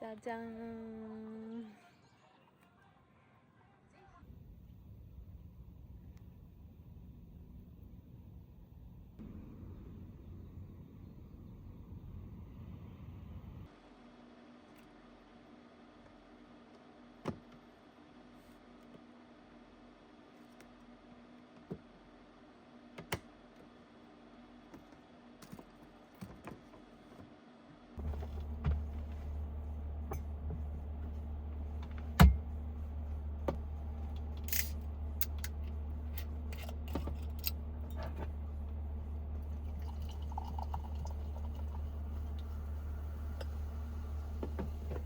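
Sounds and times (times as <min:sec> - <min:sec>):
steady low hum: 0:04.2 - 0:13.7, 0:27.9 - 0:45.0.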